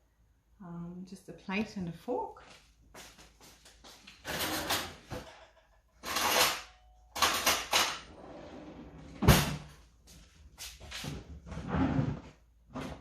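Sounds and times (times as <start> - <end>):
drawers and cupboards rattling: 4.2 - 9.8, 11.0 - 13.0.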